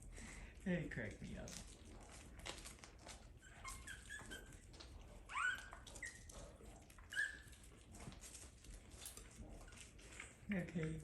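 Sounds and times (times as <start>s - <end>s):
puppies squeaking and whining: 2.0s - 10.5s.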